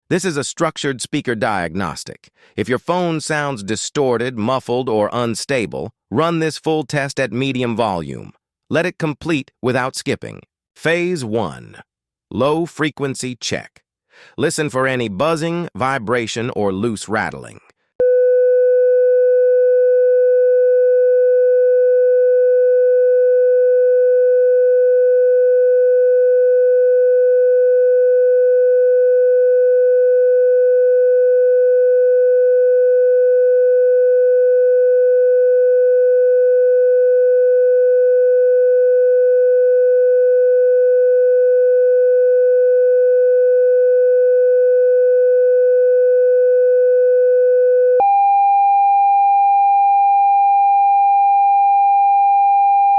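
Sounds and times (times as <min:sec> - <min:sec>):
electronic sine test tone: 0:18.0 - 0:52.9.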